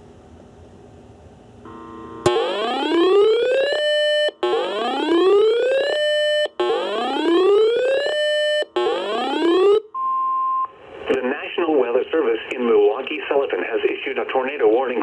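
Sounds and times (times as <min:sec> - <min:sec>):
electronic whoop siren: 0:01.7 - 0:10.0.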